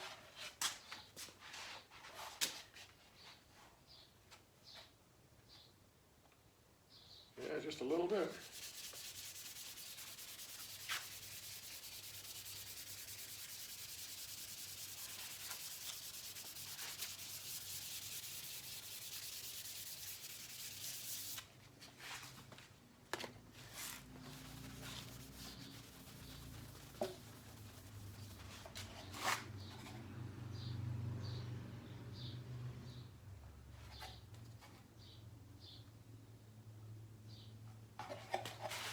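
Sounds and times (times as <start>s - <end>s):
sandpaper rubbing on metal: 8.2s - 21.5s, 23.8s - 28.7s.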